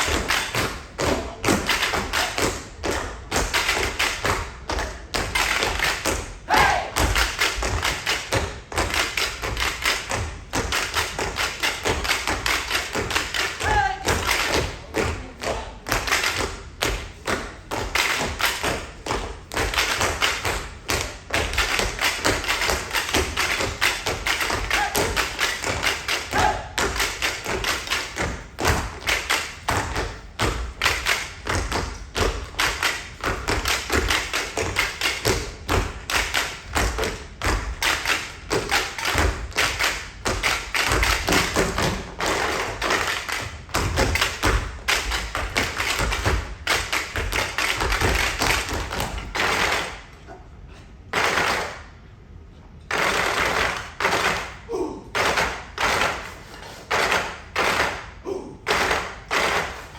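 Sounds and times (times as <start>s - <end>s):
tap shoes tapping: 0.0s - 50.0s.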